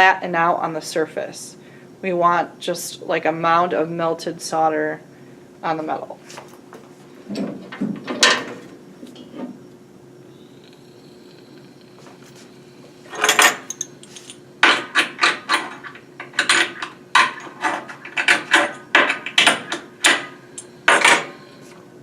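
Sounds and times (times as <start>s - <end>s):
small metal tools knocking and clicking: 13.1s - 21.3s.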